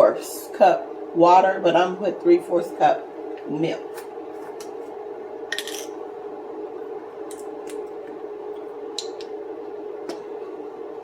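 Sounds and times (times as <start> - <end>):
steady low hum: 0.0 - 11.0
utensils and dishes clinking: 5.5 - 6.0.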